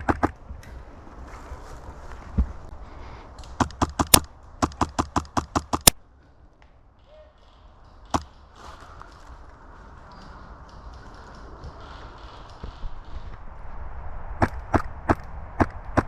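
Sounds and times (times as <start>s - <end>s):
airsoft gun shots: 3.6s - 6.0s.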